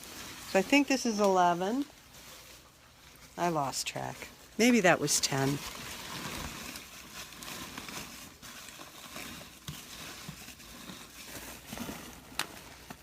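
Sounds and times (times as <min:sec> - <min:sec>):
packing wrap crinkling: 0:00.0 - 0:13.0.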